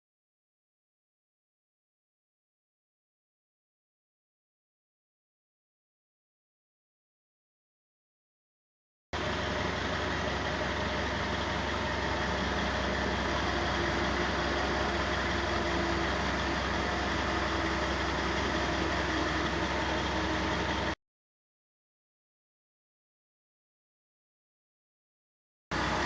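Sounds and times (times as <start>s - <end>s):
construction machinery engine running: 9.2s - 21.0s, 25.7s - 26.0s.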